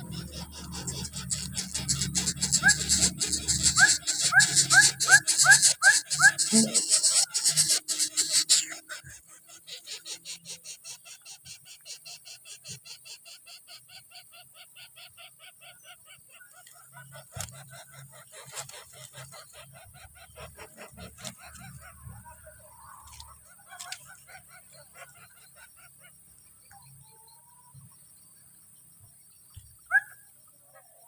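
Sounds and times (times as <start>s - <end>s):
nestlings begging calls: 0.0s - 26.8s
short bird calls: 0.0s - 27.9s, 29.8s - 31.0s.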